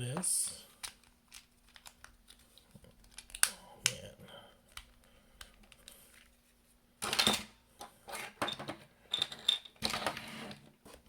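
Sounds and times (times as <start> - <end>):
plastic toy parts clicking and rattling: 0.8 - 4.0.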